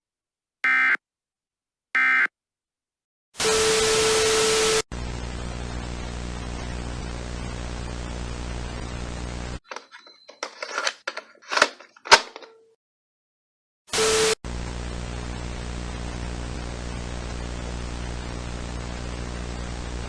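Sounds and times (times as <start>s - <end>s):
mains hum: 5.0s - 9.6s, 14.5s - 20.0s
static crackles and cracks: 5.0s - 11.2s.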